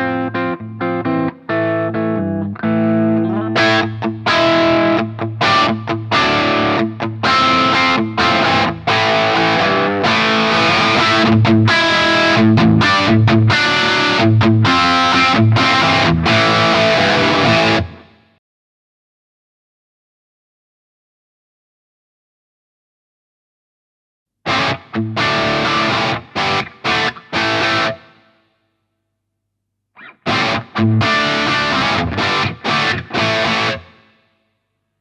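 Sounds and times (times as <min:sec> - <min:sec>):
distorted electric guitar riff: 0:00.0 - 0:18.2, 0:24.5 - 0:28.3, 0:30.0 - 0:34.2.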